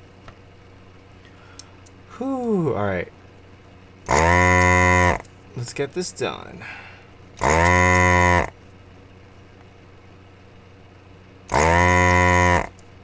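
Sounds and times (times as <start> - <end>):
buzzy moo-like tone: 4.1 - 5.3, 7.4 - 8.6, 11.5 - 12.8.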